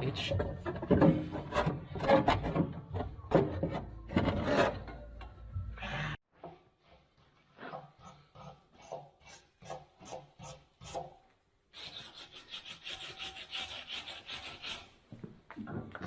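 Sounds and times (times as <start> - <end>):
hand rasping strokes: 11.7 - 15.0.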